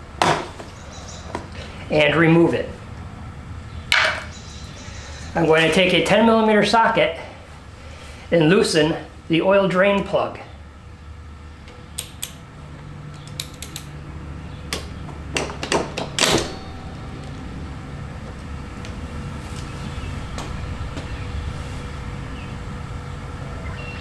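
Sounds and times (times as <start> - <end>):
low hum: 10.4 - 24.0
socket wrench clicking: 13.1 - 14.0.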